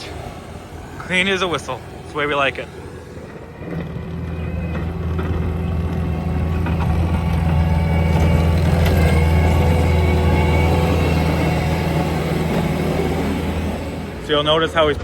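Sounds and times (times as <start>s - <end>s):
diesel engine under load: 0.0s - 15.0s.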